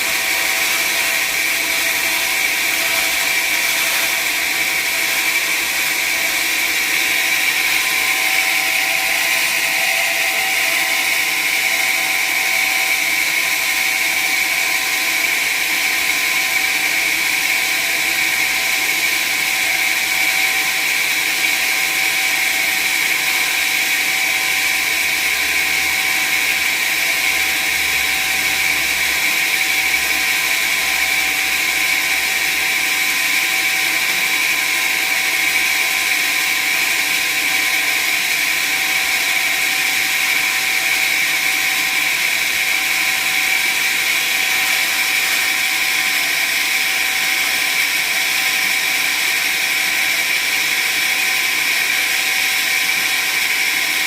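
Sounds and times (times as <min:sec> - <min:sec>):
sawmill saw whining through wood: 0:00.0 - 0:54.0.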